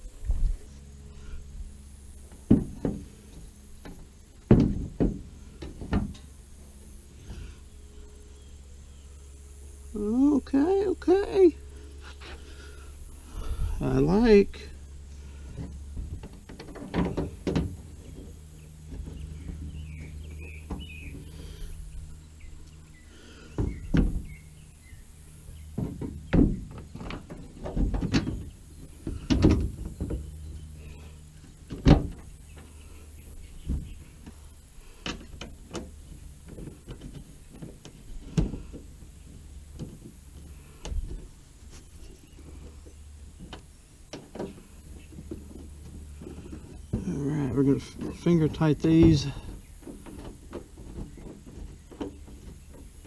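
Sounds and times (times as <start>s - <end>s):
steady low hum: 0.0s - 53.0s
plastic mud flap knocks and clunks: 2.5s - 3.1s, 3.8s - 6.2s, 15.5s - 18.3s, 25.7s - 30.3s, 35.0s - 39.1s.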